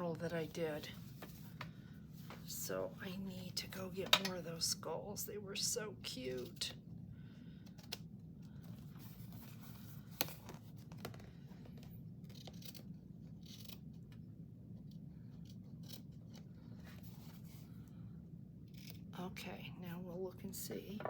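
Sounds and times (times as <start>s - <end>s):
steady low hum: 0.0s - 21.0s
scissors snipping paper: 12.2s - 14.1s, 14.9s - 16.5s.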